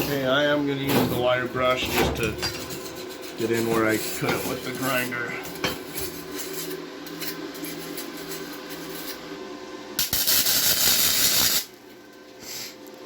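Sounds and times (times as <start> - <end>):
wire brush scrubbing metal: 1.6 - 5.3.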